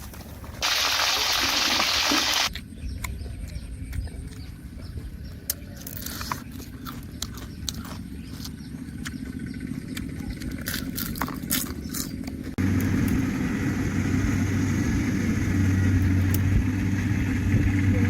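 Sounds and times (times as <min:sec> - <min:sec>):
low engine hum: 0:06.4 - 0:18.0.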